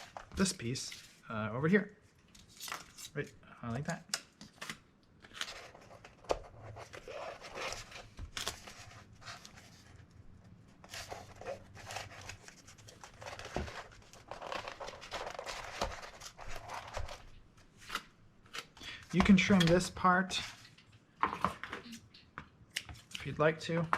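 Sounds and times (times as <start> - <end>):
cardboard rustling and crinkling: 10.8 - 18.0.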